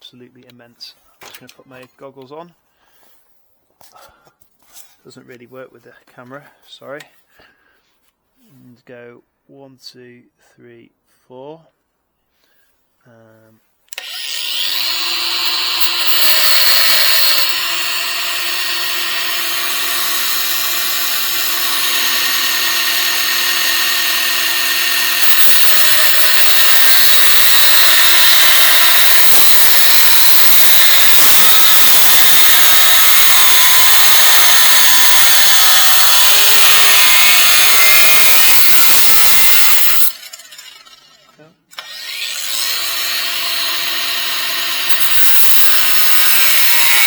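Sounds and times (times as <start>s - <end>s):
grinder disc cutting steel: 13.9s - 47.0s
angle grinder motor whine: 14.0s - 47.0s.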